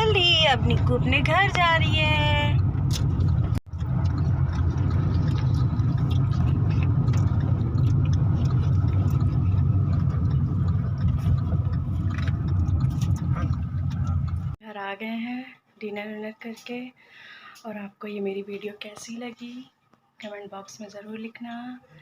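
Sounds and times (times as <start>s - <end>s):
vehicle engine and road noise: 0.0s - 14.6s.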